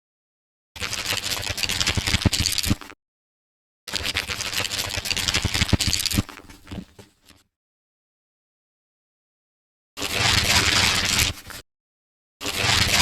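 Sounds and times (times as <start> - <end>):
book pages riffled quickly: 0.8 - 3.0, 3.9 - 7.4, 10.0 - 11.6, 12.4 - 13.0.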